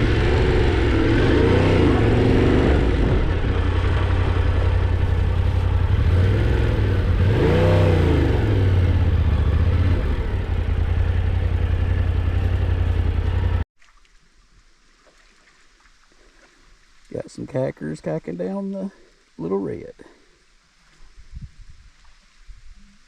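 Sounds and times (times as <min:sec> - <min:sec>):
motorcycle engine running: 0:00.0 - 0:13.6.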